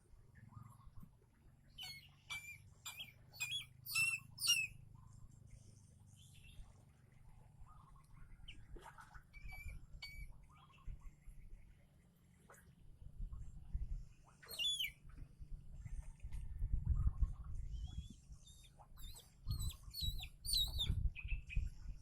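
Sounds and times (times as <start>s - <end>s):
eagle chick chirping: 1.8s - 4.7s, 14.5s - 15.0s, 17.8s - 21.4s.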